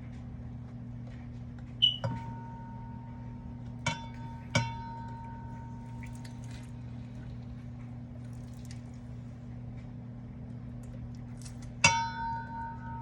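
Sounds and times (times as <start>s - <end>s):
low hum: 0.0s - 13.0s
liquid drips: 3.8s - 9.4s.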